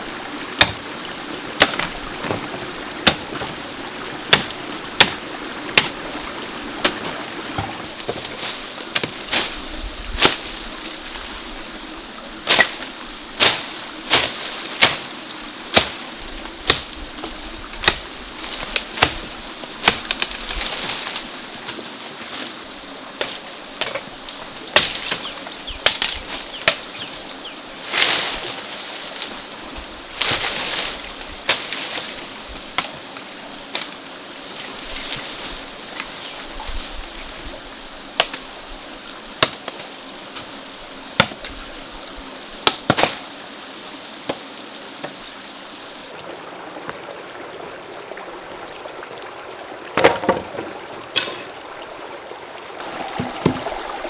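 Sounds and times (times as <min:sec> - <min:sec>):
mountain stream rushing: 0:00.0 - 0:54.0
sharp chopping knocks: 0:00.6 - 0:00.8, 0:01.6 - 0:03.5.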